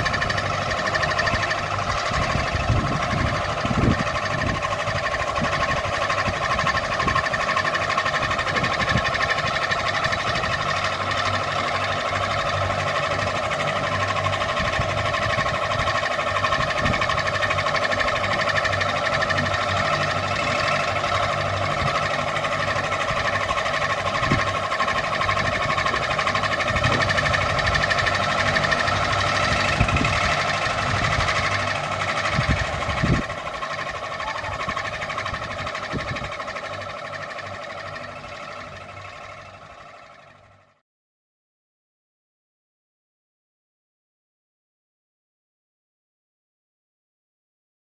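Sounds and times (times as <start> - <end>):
ceiling fan whirring: 0.0 - 11.2, 12.2 - 40.5.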